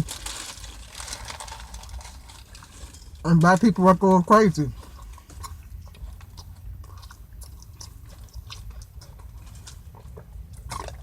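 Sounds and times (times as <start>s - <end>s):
low steady hum: 0.0s - 11.0s
person chewing food: 4.6s - 11.0s.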